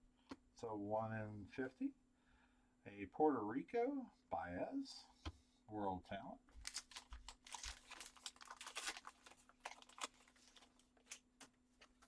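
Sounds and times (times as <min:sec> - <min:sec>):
card wrappers crackling and clicking: 0:06.6 - 0:12.0.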